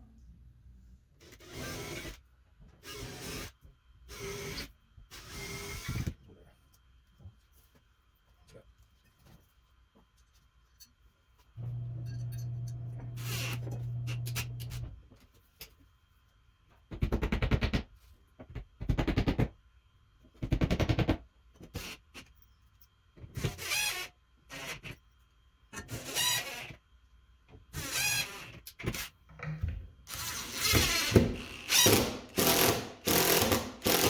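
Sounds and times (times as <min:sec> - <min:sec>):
drill rapid hammering bursts: 0:30.1 - 0:34.0
power drill running: 0:30.1 - 0:34.0.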